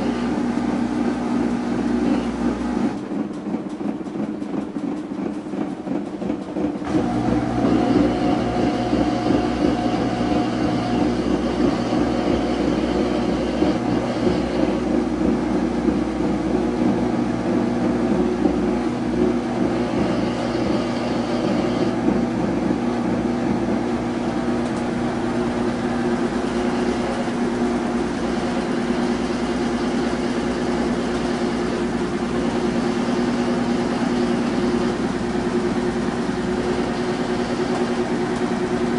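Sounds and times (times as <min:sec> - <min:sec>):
washing machine running: 0:00.0 - 0:38.9.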